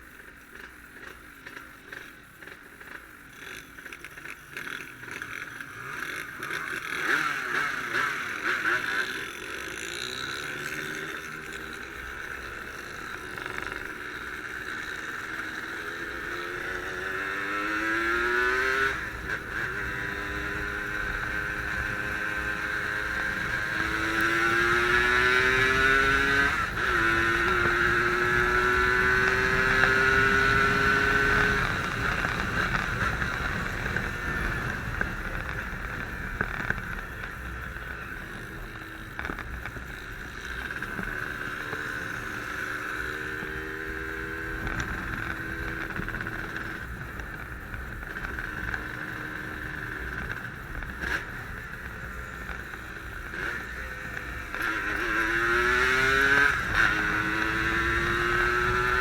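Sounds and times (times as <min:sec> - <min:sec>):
motorcycle engine revving: 0:00.2 - 0:59.0.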